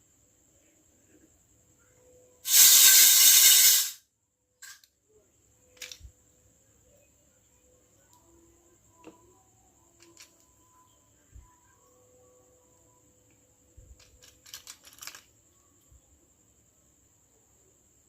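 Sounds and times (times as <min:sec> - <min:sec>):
loud steady hiss: 0:02.4 - 0:04.0.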